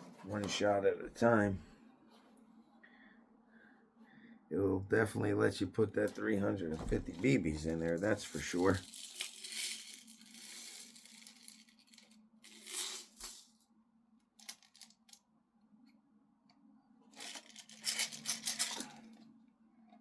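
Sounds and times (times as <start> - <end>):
steel bbs pouring and rattling: 7.8 - 13.6, 14.4 - 15.2, 17.2 - 19.1.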